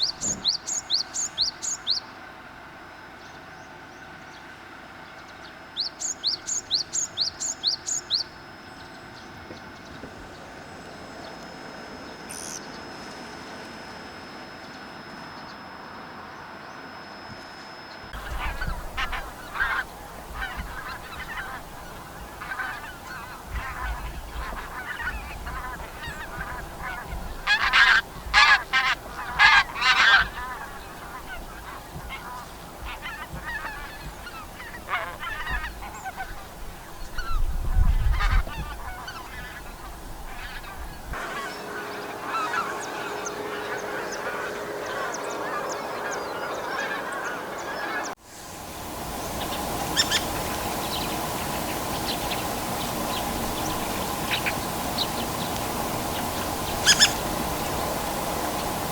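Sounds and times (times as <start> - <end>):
geese honking: 18.1 - 58.9.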